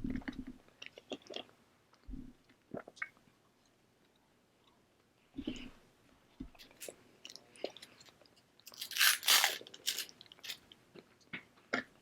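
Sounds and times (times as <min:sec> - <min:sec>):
crunching: 0:08.7 - 0:10.6.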